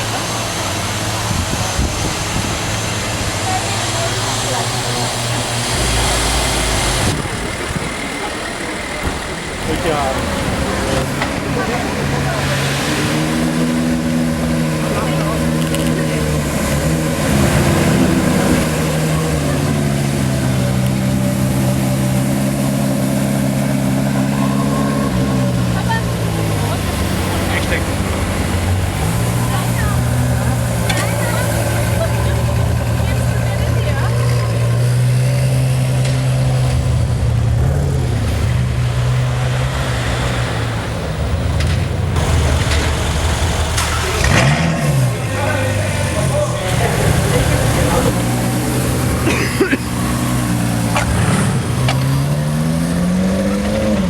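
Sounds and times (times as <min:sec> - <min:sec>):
car engine running at low revs: 0:00.0 - 0:54.0.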